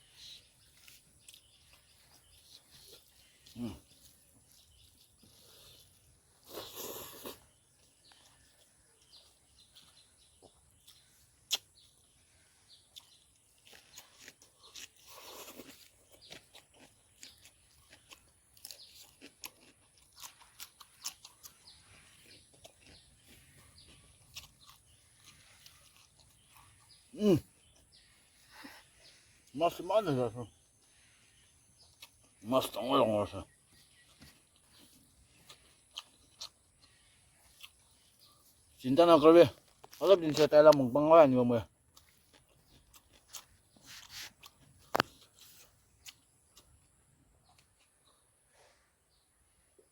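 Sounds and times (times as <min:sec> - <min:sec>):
chewing and crunching food: 0:00.0 - 0:49.9
mouth clicks: 0:10.8 - 0:11.9.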